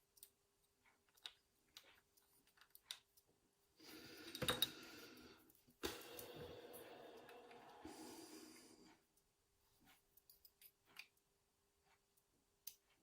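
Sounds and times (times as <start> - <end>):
small metallic clicks of lock pins: 0.1 - 3.3.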